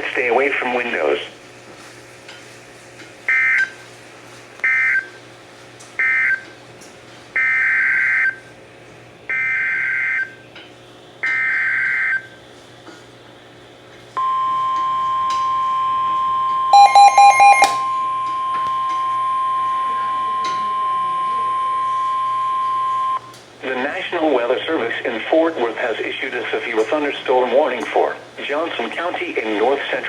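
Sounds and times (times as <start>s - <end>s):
loud beeps: 14.2s - 23.3s
steady single-pitch alert tone: 14.2s - 23.3s.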